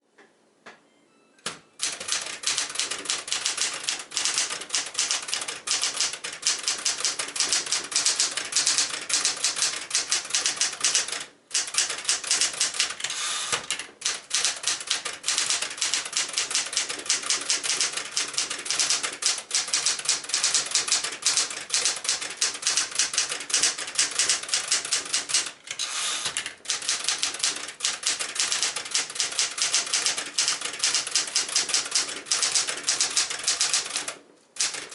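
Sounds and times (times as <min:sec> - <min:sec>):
manual typewriter typing: 0:01.8 - 0:34.9.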